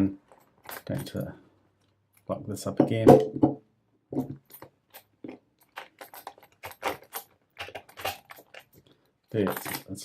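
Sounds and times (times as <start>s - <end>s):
padlock clicking and rattling: 4.4s - 10.0s.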